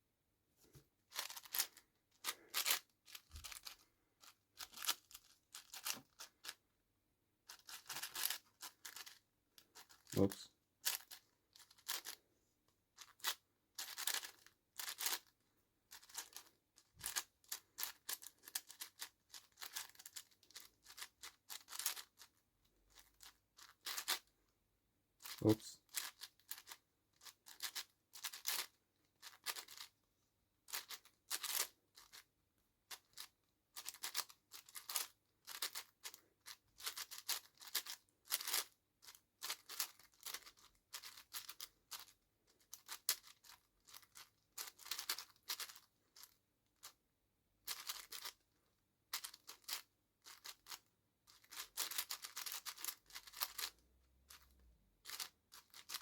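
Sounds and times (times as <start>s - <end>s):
puzzle cube turning clicks: 1.1s - 6.6s, 7.5s - 10.1s, 13.0s - 15.3s, 15.9s - 22.3s, 25.2s - 29.9s, 30.7s - 32.2s, 32.9s - 42.1s, 42.7s - 46.3s, 47.7s - 48.4s, 49.1s - 53.7s, 54.3s - 56.0s.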